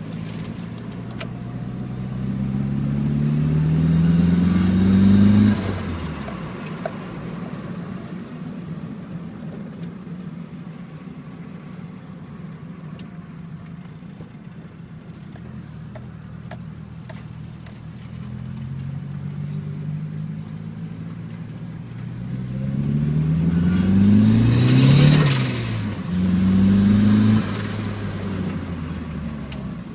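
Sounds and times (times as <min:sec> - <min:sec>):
turbo engine revving: 0:00.0 - 0:07.8, 0:22.0 - 0:29.9.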